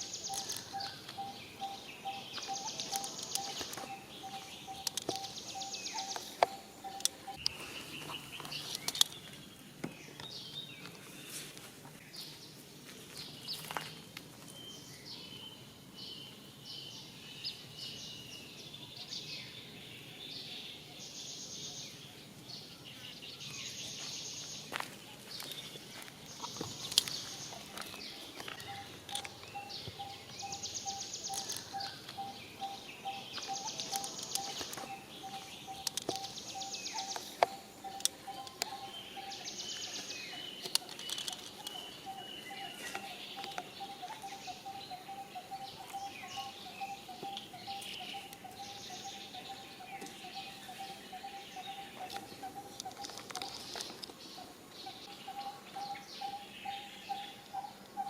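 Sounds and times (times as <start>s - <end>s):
bird chirps: 0.0s - 11.5s, 13.2s - 58.0s
sharp clicks: 2.8s - 4.0s, 4.7s - 7.6s, 33.6s - 35.0s
buzzy insect trills: 26.4s - 58.0s.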